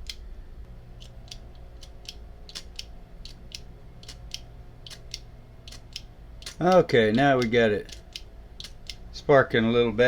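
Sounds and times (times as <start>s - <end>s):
lighter mechanism clicking: 1.0s - 6.8s.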